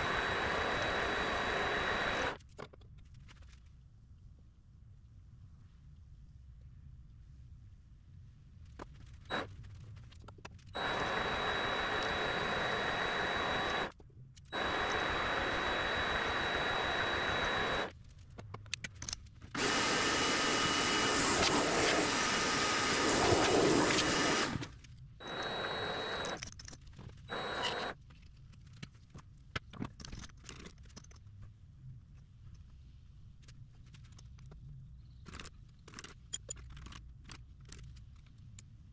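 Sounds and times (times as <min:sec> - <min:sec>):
power tool motor whining: 0:00.0 - 0:02.4, 0:10.8 - 0:13.9, 0:14.6 - 0:17.9, 0:19.6 - 0:26.4, 0:27.3 - 0:28.0
light clicks and handling noise: 0:26.1 - 0:38.9.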